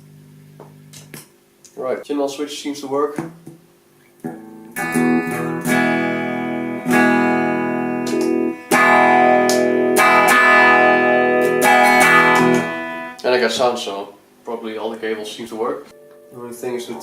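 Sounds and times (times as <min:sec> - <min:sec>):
electric guitar strummed chords: 0:04.2 - 0:13.2, 0:15.9 - 0:17.0.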